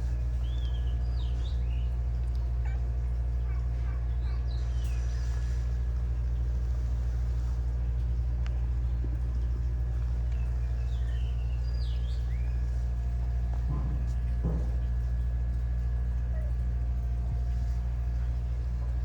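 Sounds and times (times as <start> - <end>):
low machine drone: 0.0 - 19.0
bird chirps: 10.7 - 12.8.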